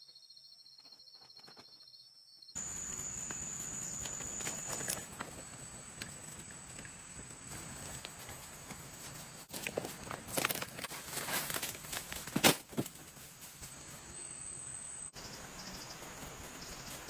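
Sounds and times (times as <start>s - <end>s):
insects trilling: 0.0s - 12.3s, 12.9s - 17.0s
high insect drone: 0.2s - 10.5s, 12.9s - 17.0s
clicks and rustles: 3.3s - 13.8s.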